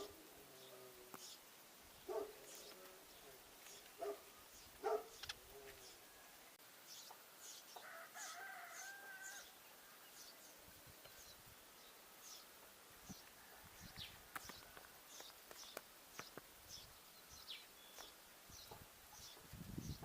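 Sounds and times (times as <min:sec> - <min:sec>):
sparrows chirping: 0:00.0 - 0:20.0
distant rooster crowing: 0:07.8 - 0:10.1, 0:13.2 - 0:14.9.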